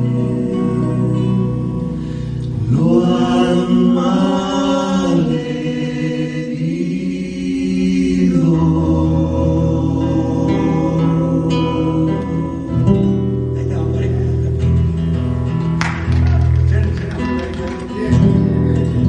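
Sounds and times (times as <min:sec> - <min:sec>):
men singing in harmony: 0:00.0 - 0:13.6.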